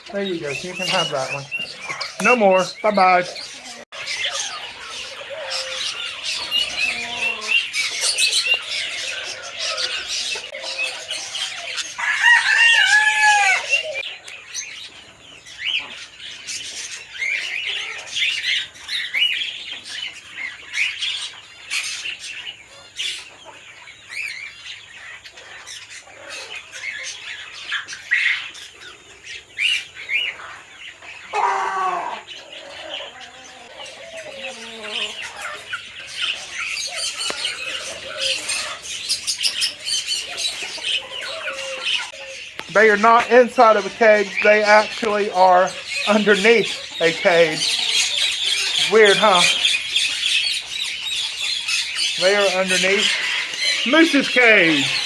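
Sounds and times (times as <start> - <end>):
small birds chirping: 0.0 - 55.0
rooster crowing: 4.8 - 7.8, 8.8 - 14.0, 31.3 - 35.4
drawn-out falling call: 31.3 - 35.4.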